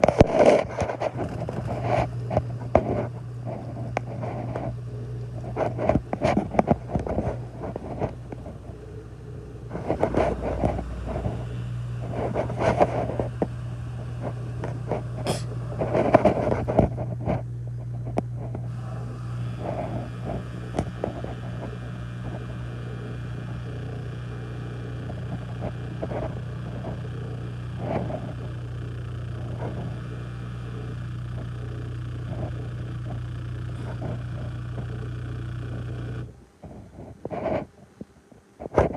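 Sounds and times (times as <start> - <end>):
irregular noises: 15.3 - 15.5.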